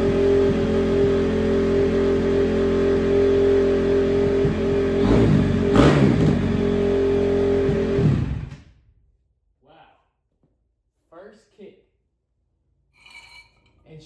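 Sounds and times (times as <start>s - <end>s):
motorcycle engine revving: 0.0s - 8.7s.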